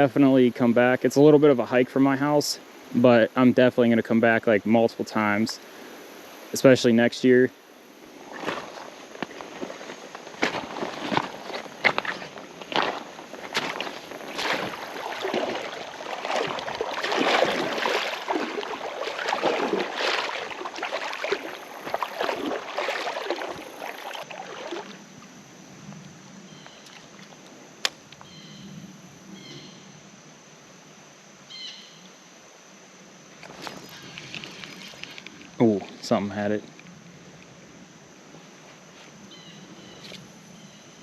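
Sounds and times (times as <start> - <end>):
footsteps sloshing through water: 8.1 - 25.4, 26.6 - 27.5, 33.4 - 36.2.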